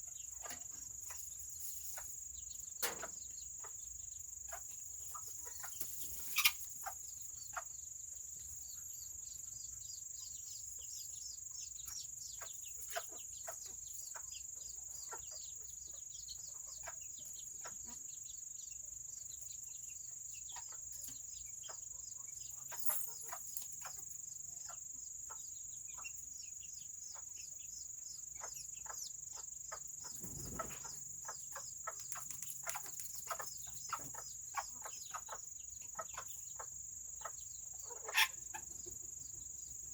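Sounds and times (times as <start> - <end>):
chickens peeping and clucking: 0.0 - 39.9.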